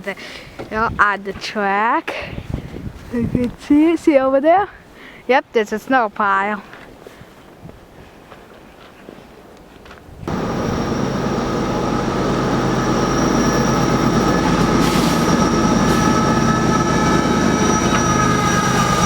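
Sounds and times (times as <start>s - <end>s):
high-pitched wheel squeal: 10.3s - 19.0s
train wheels rumbling on rails: 10.3s - 19.0s.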